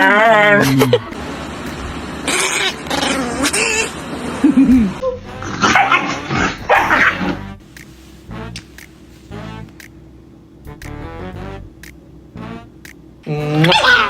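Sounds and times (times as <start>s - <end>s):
dog vocalizing: 2.2s - 7.5s
music playing: 6.2s - 10.0s, 10.6s - 13.6s.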